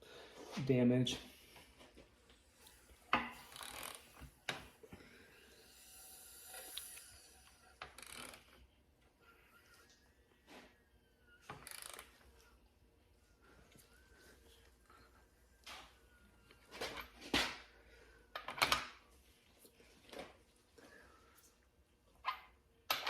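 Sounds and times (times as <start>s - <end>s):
hand ratchet clicking: 3.4s - 4.0s, 7.9s - 8.4s.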